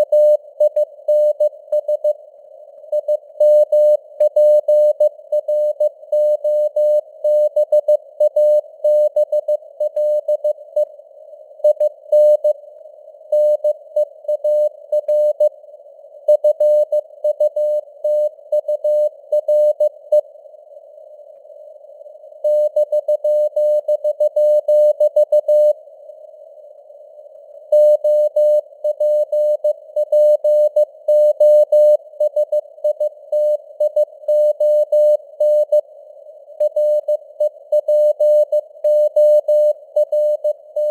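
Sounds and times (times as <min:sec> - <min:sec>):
morse code tone: 0:27.8 - 0:35.8, 0:36.6 - 0:37.2, 0:37.8 - 0:40.9.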